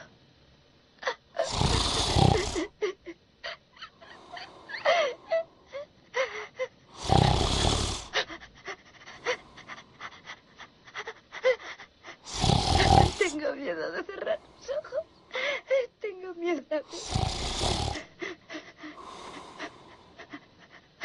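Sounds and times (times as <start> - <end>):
man snoring loudly: 1.4 - 2.8, 7.0 - 8.2, 12.3 - 13.4, 16.9 - 18.1.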